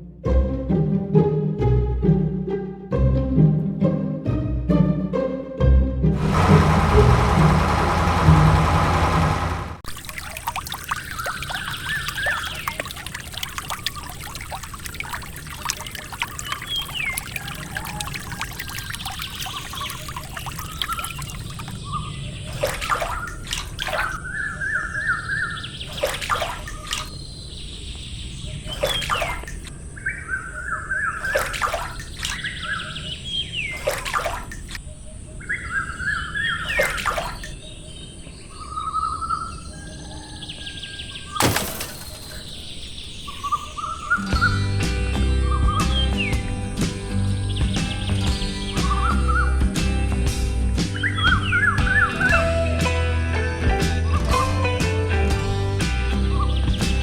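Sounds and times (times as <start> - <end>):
background music: 0.0 - 8.6, 44.3 - 57.0
water trickling: 6.2 - 22.0, 41.4 - 44.5
birds chirping and singing: 35.0 - 50.0, 50.9 - 52.7.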